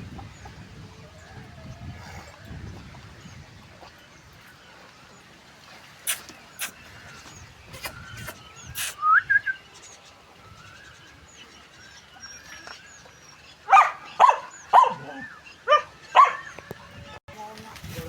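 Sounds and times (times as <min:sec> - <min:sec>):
small birds chirping: 0:01.7 - 0:17.6
dog barking: 0:13.7 - 0:16.6.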